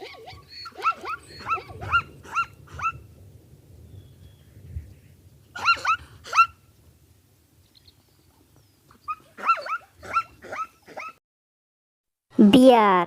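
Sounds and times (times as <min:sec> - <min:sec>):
zebra barking: 0:09.1 - 0:11.2.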